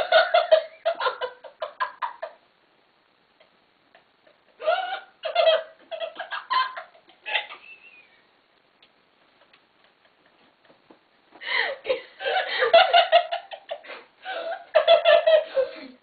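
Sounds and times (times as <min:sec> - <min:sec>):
girls laughing breathlessly: 0:03.4 - 0:08.3, 0:09.8 - 0:16.0.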